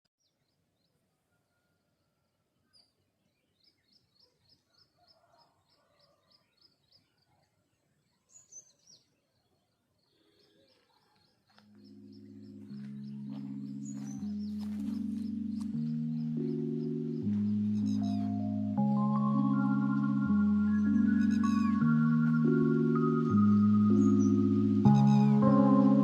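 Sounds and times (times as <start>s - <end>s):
bird chirping: 0.2s - 26.0s
music: 11.6s - 26.0s
bird downward-sliding calls: 12.0s - 26.0s.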